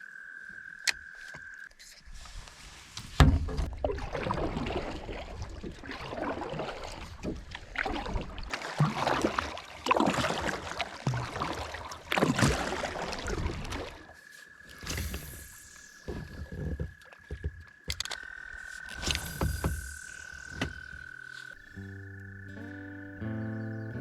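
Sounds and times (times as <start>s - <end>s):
paddle splashing in water: 3.0s - 17.9s.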